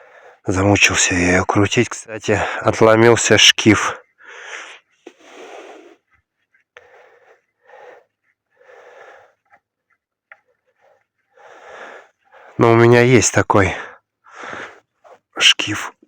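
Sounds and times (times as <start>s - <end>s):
man breathing heavily: 3.8s - 6.1s, 6.8s - 9.8s, 10.4s - 12.8s, 13.7s - 15.4s.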